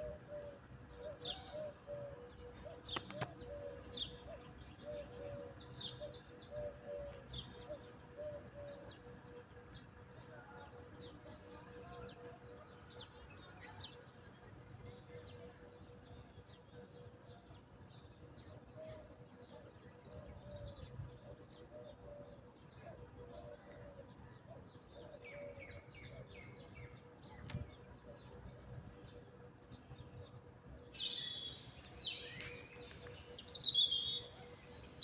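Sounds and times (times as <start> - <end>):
small birds chirping: 29.0 - 35.0.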